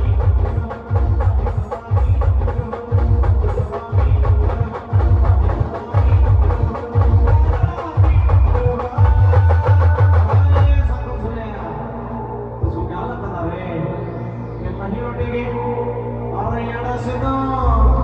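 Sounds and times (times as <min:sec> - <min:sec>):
booming drum beats: 0:00.0 - 0:11.5.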